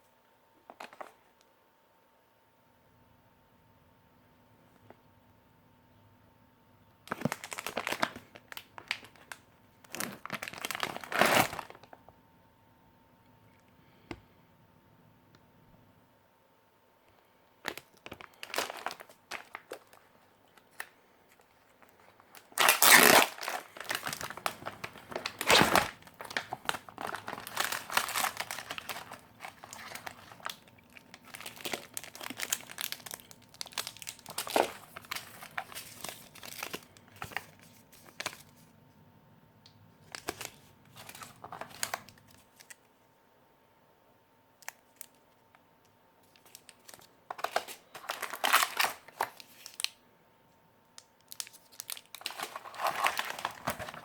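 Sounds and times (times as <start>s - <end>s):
packaging crinkling and rustling: 7.0s - 12.0s, 17.6s - 38.7s, 40.0s - 42.9s, 46.2s - 50.0s, 51.2s - 54.0s.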